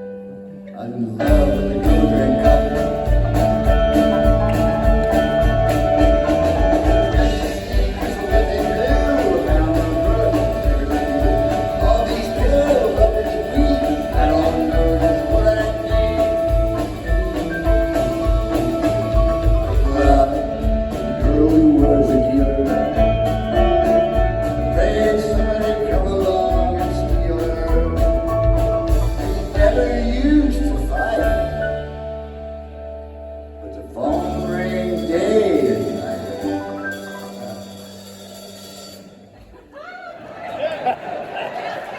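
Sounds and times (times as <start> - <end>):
live blues-rock band playing: 0.0 - 39.4.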